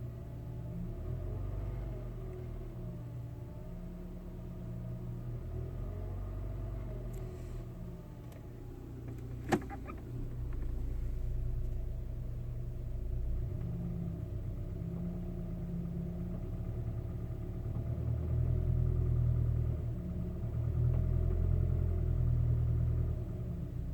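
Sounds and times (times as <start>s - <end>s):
engine running under load: 6.1s - 23.9s
engine knocking and tapping: 8.1s - 23.9s.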